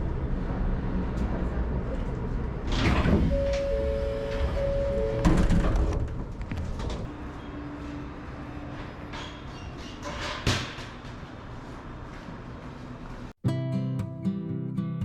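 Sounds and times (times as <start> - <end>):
knocks and clunks: 4.3 - 7.1.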